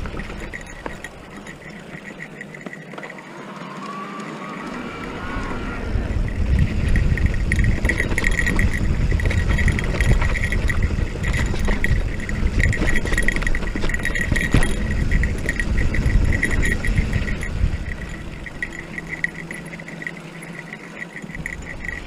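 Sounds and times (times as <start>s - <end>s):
bike frame and chain rattling: 0.0s - 22.0s
tyres rumbling on dirt trail: 0.0s - 22.0s
electric motor whine: 3.0s - 11.3s.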